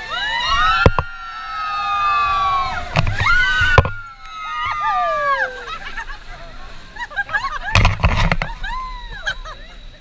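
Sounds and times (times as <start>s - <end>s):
people screaming: 0.0s - 7.8s, 8.4s - 9.9s.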